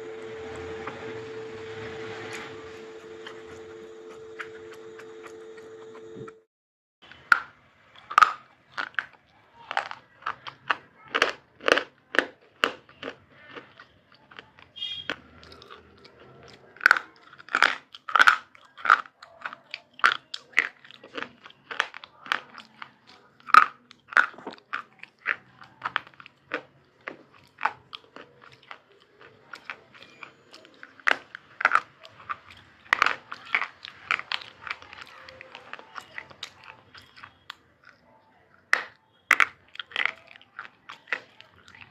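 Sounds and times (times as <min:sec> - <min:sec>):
person crunching hard food: 0:07.1 - 0:41.9.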